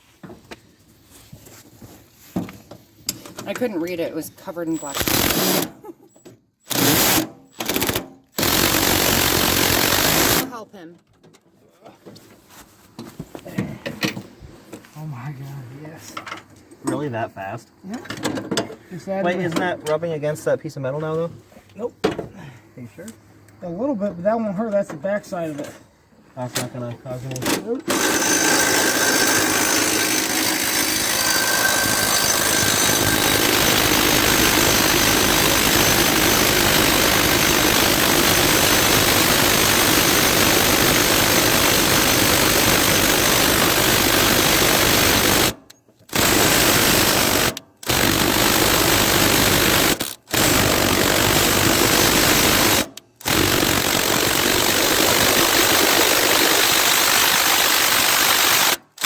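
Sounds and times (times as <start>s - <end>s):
mower engine running: 7.8s - 10.6s, 27.9s - 59.0s.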